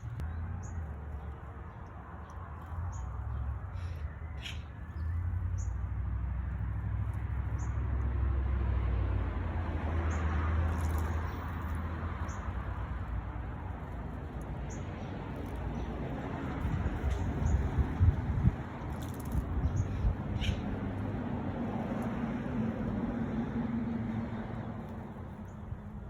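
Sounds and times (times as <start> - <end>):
small birds chirping: 0.0 - 8.2, 9.9 - 23.4, 24.2 - 26.0
steady low rumble: 10.7 - 26.0.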